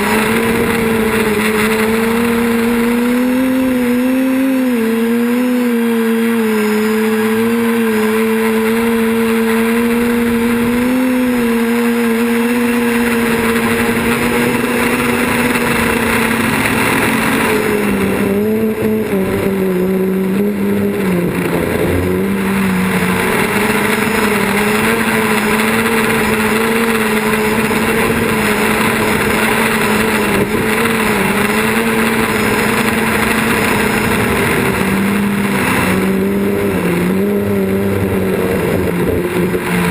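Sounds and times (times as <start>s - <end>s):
drone propellers buzzing: 0.0s - 39.9s.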